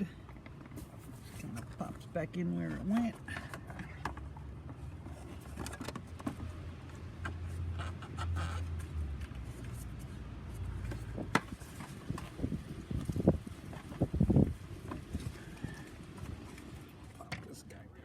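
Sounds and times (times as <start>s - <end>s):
plastic parts clicking and knocking: 2.8s - 6.6s.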